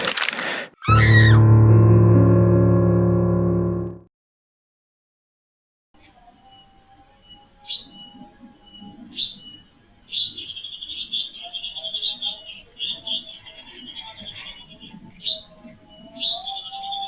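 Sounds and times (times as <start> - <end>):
lower animal calls: 0.8 - 1.4
rising chirps: 0.9 - 4.0.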